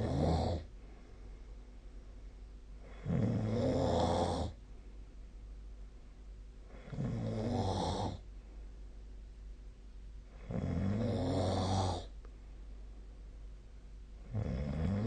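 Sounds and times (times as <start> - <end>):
person snoring: 0.0 - 0.7, 2.8 - 4.6, 6.7 - 8.3, 10.4 - 12.2, 14.2 - 15.0
faint low hum: 0.0 - 15.0.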